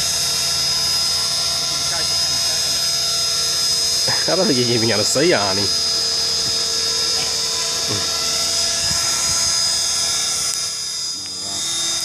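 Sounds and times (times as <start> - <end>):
rc helicopter motor whine: 0.0 - 12.0.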